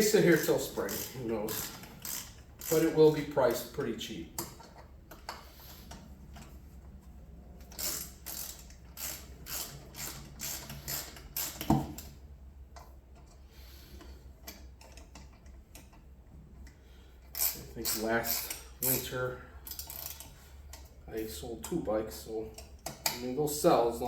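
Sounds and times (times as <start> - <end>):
hand ratchet clicking: 0.4 - 3.3, 7.6 - 12.1, 17.2 - 20.9.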